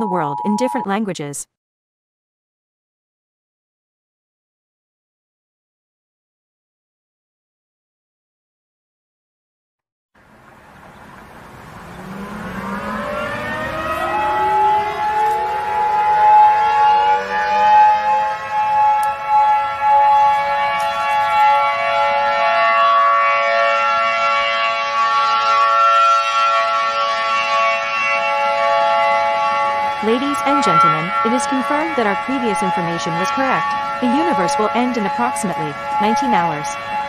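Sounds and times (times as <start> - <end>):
civil defense siren wailing: 10.3 - 37.0.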